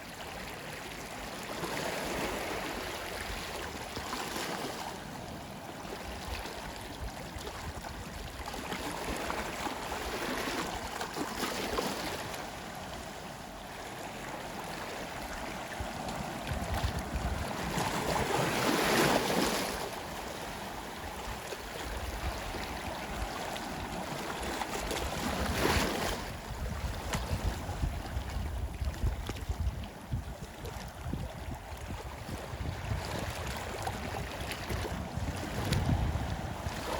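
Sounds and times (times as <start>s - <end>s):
sea waves washing on shore: 0.0s - 36.9s.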